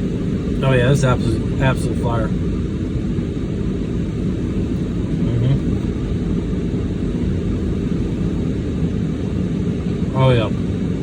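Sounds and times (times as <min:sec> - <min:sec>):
car engine idling inside cabin: 0:00.0 - 0:11.0
man murmuring while eating: 0:05.1 - 0:05.8.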